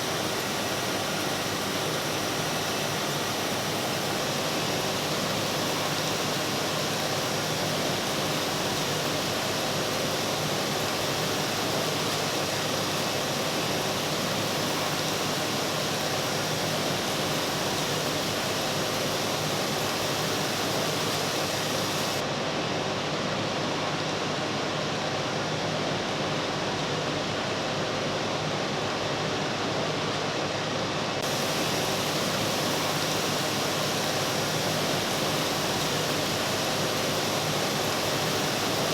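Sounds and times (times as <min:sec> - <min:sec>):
machine noise hiss: 0:00.0 - 0:22.3, 0:31.2 - 0:38.9.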